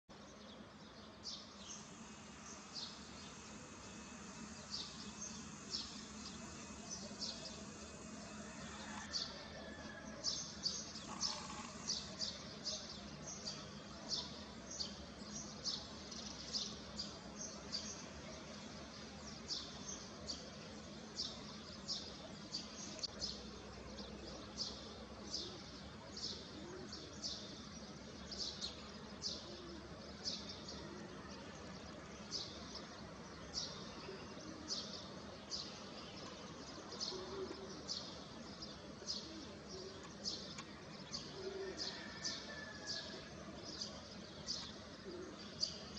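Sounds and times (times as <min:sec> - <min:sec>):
faint background noise: 0:00.1 - 0:45.9
small bird chirping: 0:10.7 - 0:12.4.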